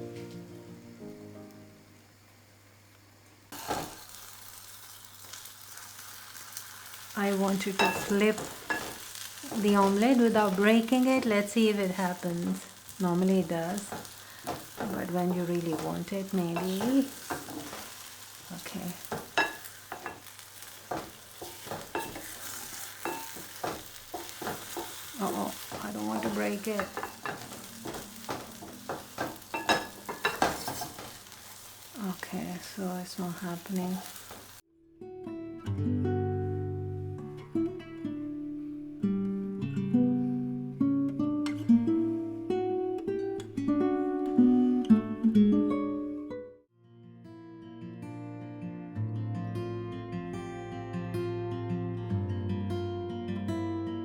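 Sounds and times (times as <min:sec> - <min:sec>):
acoustic guitar melody: 0:00.0 - 0:02.0, 0:20.8 - 0:31.2, 0:34.7 - 0:54.0
omelette sizzling in a frying pan: 0:01.2 - 0:34.7
spatula knocking and scraping pan: 0:07.7 - 0:10.3, 0:13.8 - 0:18.1, 0:19.0 - 0:31.6.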